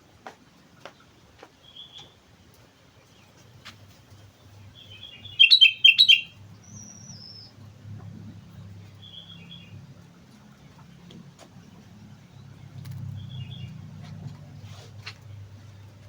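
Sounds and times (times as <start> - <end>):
bird singing: 1.6 - 2.2, 4.2 - 11.0, 11.7 - 14.2
faint low hum: 1.6 - 16.0.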